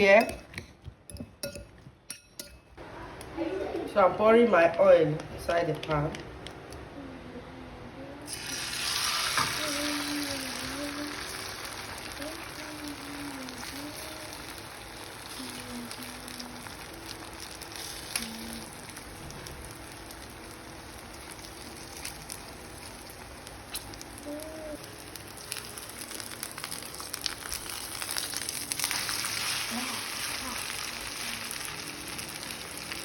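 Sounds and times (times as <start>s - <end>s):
oil sizzling in a frying pan: 8.3s - 33.0s.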